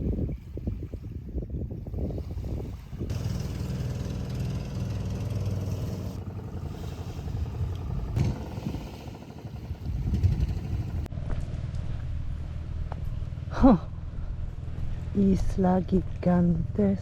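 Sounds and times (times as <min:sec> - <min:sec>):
small motorcycle engine running: 0:02.2 - 0:15.2.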